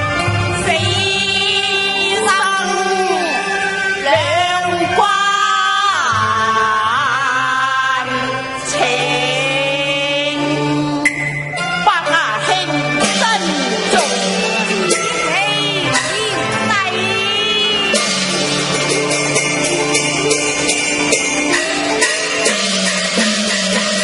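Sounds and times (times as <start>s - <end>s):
instrumental accompaniment: 0.0s - 24.0s
opera singing: 0.4s - 11.1s, 11.8s - 18.8s.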